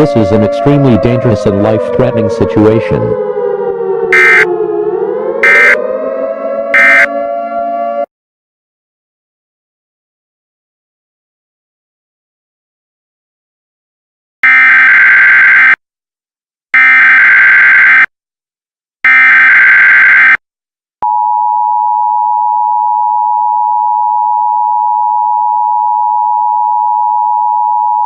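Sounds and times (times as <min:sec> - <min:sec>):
two-tone attention signal: 0:04.2 - 0:04.5, 0:05.4 - 0:05.8, 0:06.8 - 0:07.1.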